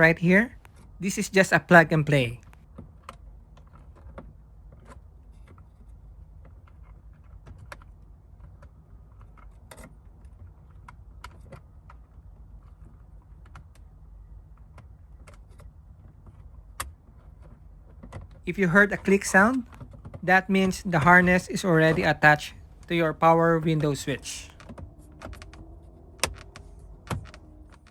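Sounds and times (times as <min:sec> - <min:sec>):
low steady hum: 0:00.0 - 0:02.5, 0:18.5 - 0:27.9.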